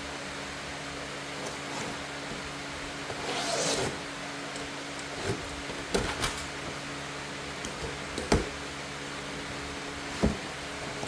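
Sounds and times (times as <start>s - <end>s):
cardboard box thumps and knocks: 7.9s - 8.6s, 10.0s - 11.0s.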